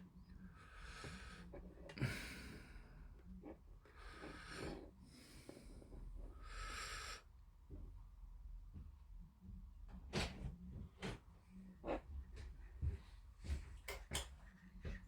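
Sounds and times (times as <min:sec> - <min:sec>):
person breathing: 0:00.5 - 0:03.2.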